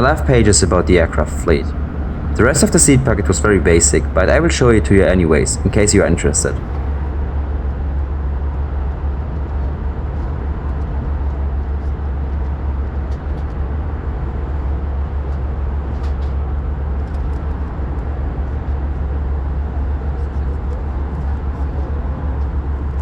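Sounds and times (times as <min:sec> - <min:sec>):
aircraft cabin rumble: 0:00.0 - 0:07.1.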